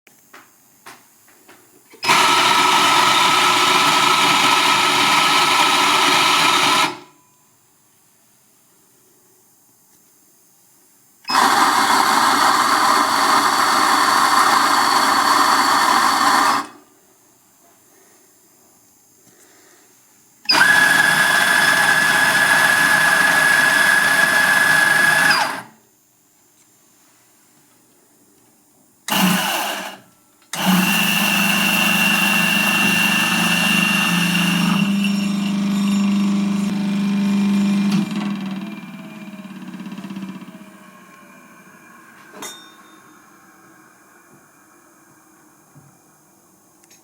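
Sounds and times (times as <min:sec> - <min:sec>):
coffee grinder motor grinding: 0:02.0 - 0:07.1, 0:11.3 - 0:16.8, 0:20.5 - 0:25.8, 0:29.1 - 0:42.3.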